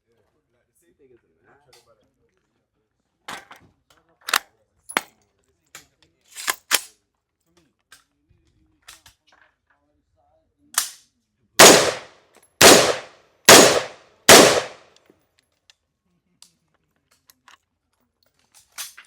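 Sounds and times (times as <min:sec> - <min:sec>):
faint gunshot crack: 0:11.6 - 0:14.8
gunshots with echo: 0:11.6 - 0:14.8.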